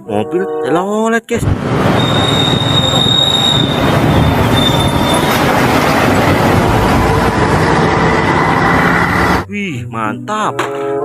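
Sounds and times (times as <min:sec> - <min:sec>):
large vehicle engine rumbling: 0:01.4 - 0:09.5
thin high whistle tone: 0:02.0 - 0:05.3.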